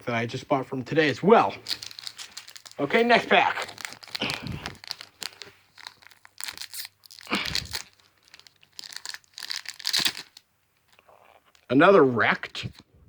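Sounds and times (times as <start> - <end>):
wrapper tearing and crinkling: 1.6 - 11.7.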